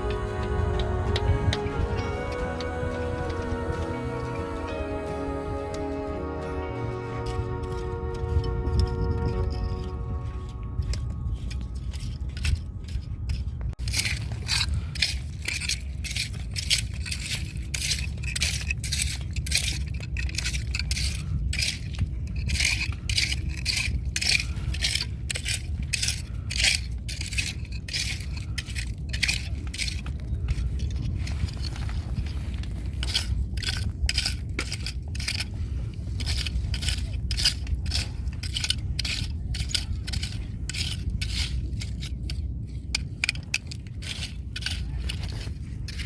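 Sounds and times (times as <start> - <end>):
steady low rumble: 0.0 - 46.0
scraping through wet sand and shells: 6.4 - 46.0.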